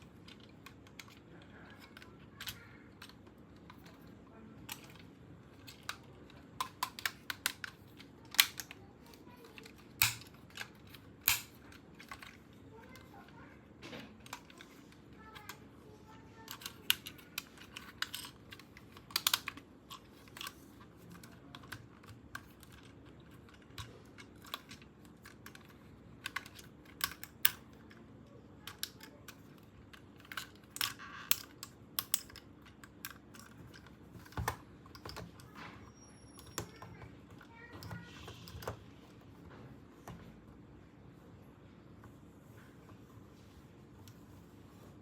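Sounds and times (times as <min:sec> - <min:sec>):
plastic pieces clicking and tapping: 0:00.0 - 0:35.8, 0:36.4 - 0:39.2
plastic snapping: 0:05.6 - 0:12.4, 0:16.4 - 0:25.6.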